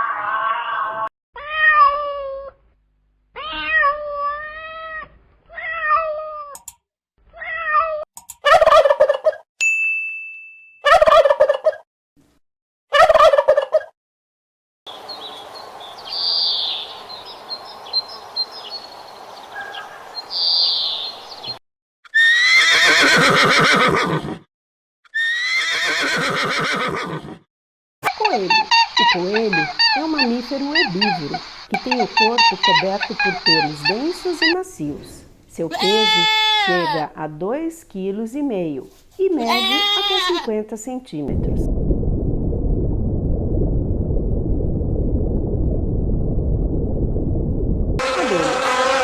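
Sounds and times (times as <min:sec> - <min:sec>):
turkeys gobbling: 0:08.5 - 0:09.3, 0:13.0 - 0:13.8
noisy farmyard background: 0:14.9 - 0:21.6, 0:35.6 - 0:37.3, 0:48.0 - 0:49.0.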